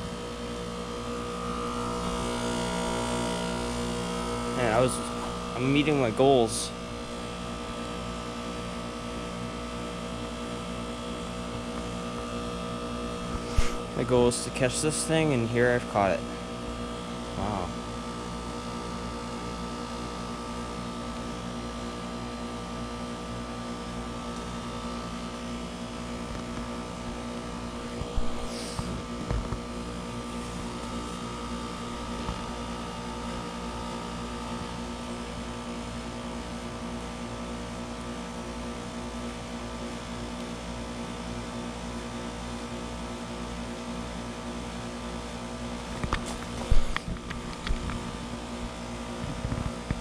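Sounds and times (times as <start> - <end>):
heat pump unit humming: 0.0 - 50.0.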